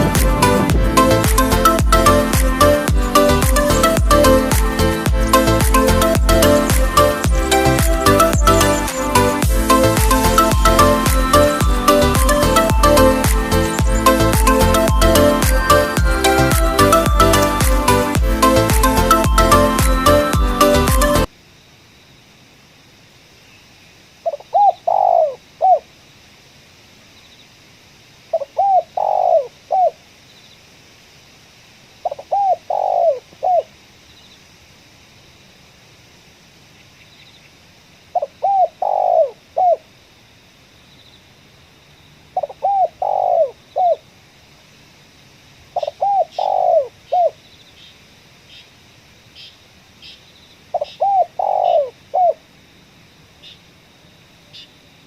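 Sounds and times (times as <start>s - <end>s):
dove cooing: 24.3s - 25.8s, 28.5s - 30.0s, 32.1s - 33.7s, 38.2s - 39.8s, 42.4s - 44.0s, 45.8s - 47.4s, 50.8s - 52.4s.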